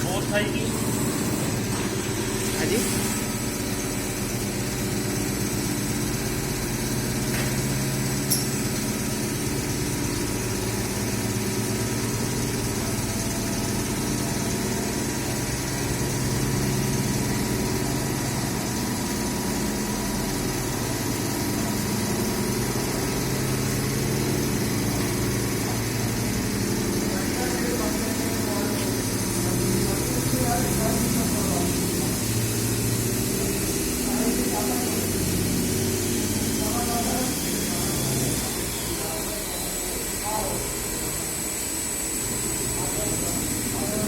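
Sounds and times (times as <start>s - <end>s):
idling engine drone: 0.0s - 44.0s
sharp click: 8.2s - 8.6s.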